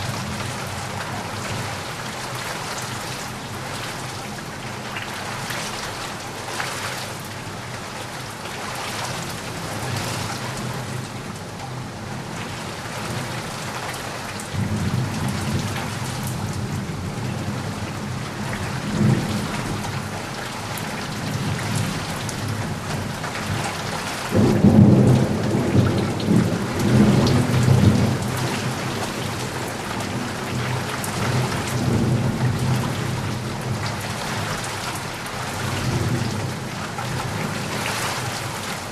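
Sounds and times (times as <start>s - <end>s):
steady rain falling: 0.0s - 38.9s
thunder rumbling: 24.3s - 34.5s.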